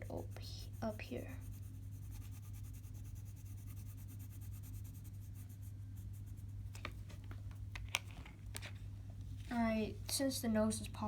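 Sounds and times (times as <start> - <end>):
pencil scratching on paper: 0.0 - 6.8.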